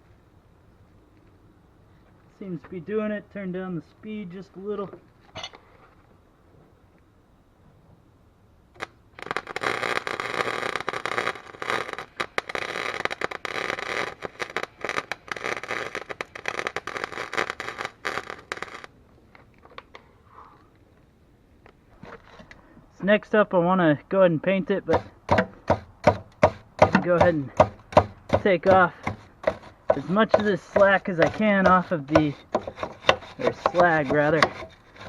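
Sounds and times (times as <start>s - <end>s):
welder arc crackling: 8.8s - 18.9s, 28.3s - 35.0s.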